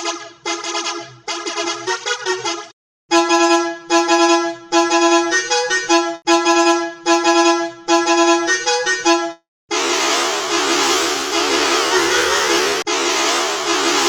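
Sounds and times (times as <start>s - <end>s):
reedy bus horn tune: 0.0s - 9.4s.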